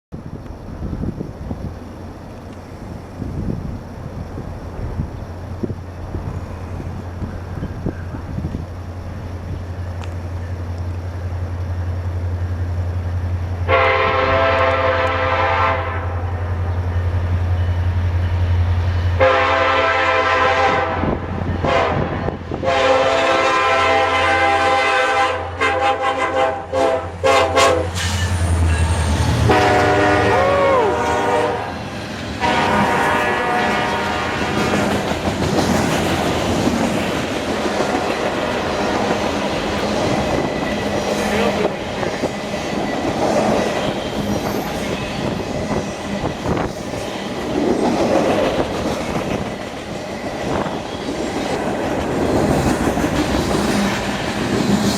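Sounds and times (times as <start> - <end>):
locomotive engine drone: 0.1 - 54.9
locomotive air horn blasts: 13.6 - 16.4, 19.1 - 28.4, 29.3 - 31.8, 32.4 - 34.8
train wheels clattering on rails: 31.0 - 54.9.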